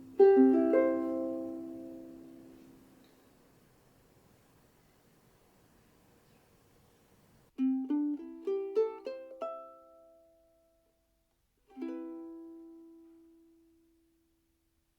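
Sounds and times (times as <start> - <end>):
ukulele chord ringing: 0.0 - 2.9, 7.6 - 10.7, 11.7 - 13.8
ukulele plucked notes: 0.0 - 2.9, 7.6 - 10.7, 11.7 - 13.8.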